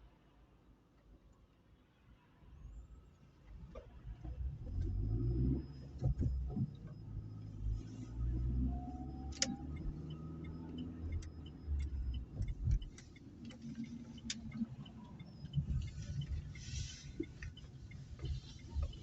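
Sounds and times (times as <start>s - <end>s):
car cabin rumble while driving: 3.3s - 19.0s
irregular ticks and knocks: 9.3s - 19.0s.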